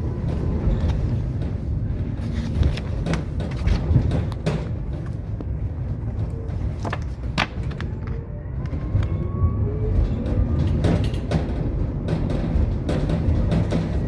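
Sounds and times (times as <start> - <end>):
tram rumbling along track: 0.0 - 14.0
wheels clicking over rails: 0.0 - 14.0.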